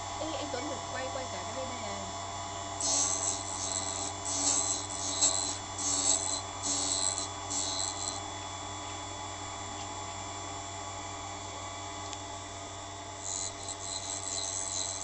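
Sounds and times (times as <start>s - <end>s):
grinder motor hum: 0.0s - 10.3s, 11.0s - 15.0s
rasping grinding strokes: 2.8s - 8.2s, 13.2s - 15.0s.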